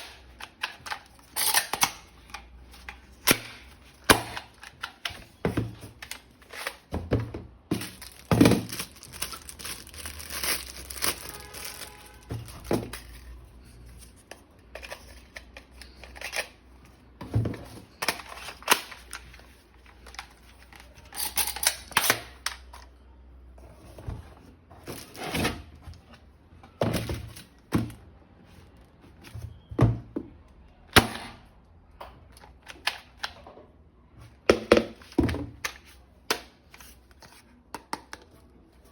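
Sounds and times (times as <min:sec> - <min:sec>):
packaging tearing and crinkling: 0:07.8 - 0:13.2.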